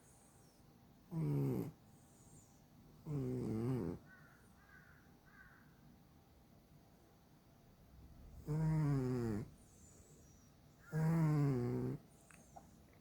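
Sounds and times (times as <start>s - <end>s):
cat snoring: 1.1s - 4.0s, 8.2s - 10.2s, 10.9s - 12.4s.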